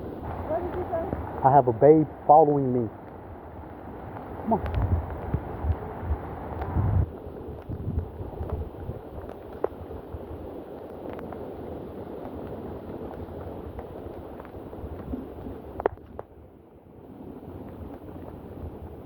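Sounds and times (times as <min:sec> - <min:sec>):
wind buffeting microphone: 0:00.0 - 0:16.4
rain: 0:00.0 - 0:19.0.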